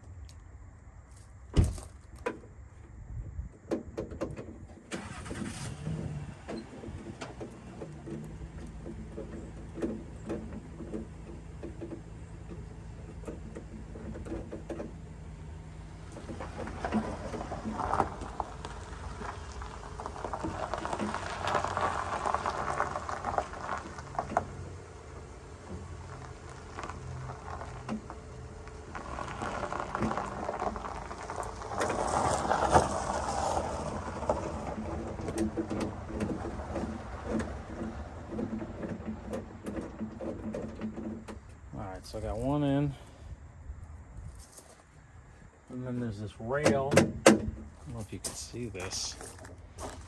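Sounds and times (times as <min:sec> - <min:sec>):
metallic clicks and clunks: 0:03.6 - 0:05.4, 0:06.0 - 0:15.1, 0:34.4 - 0:41.7, 0:46.6 - 0:47.8.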